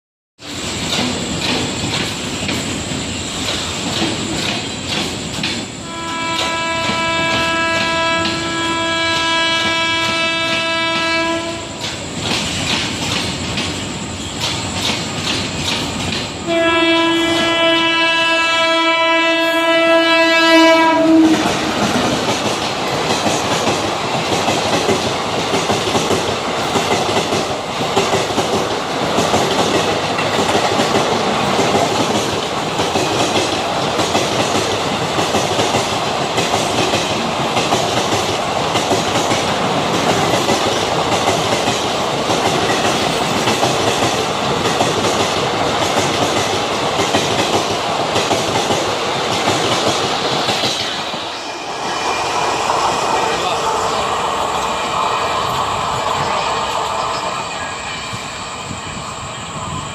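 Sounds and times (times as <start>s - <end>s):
wheels clacking over rail joints: 0.4s - 8.6s, 9.2s - 16.5s
train rumbling past: 0.4s - 59.9s
train horn: 5.8s - 11.8s, 16.4s - 21.8s.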